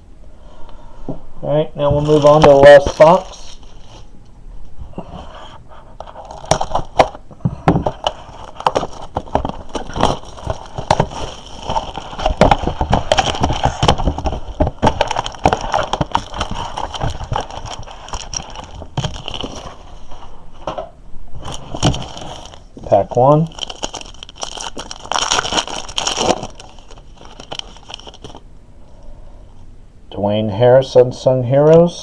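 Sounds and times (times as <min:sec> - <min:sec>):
packaging crinkling: 0:01.8 - 0:04.1, 0:06.0 - 0:20.2, 0:21.4 - 0:28.4.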